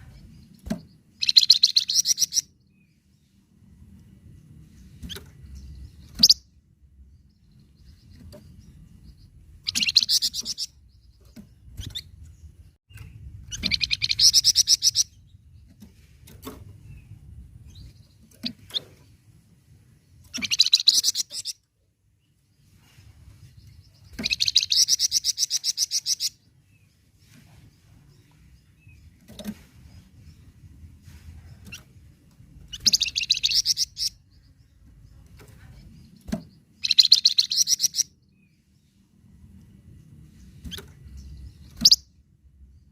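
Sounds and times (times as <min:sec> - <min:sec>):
bird sharp chirps: 0:00.0 - 0:02.8, 0:05.0 - 0:06.6, 0:07.3 - 0:12.2, 0:12.9 - 0:15.4, 0:20.2 - 0:21.6, 0:23.8 - 0:26.9, 0:32.7 - 0:38.6, 0:40.6 - 0:42.2.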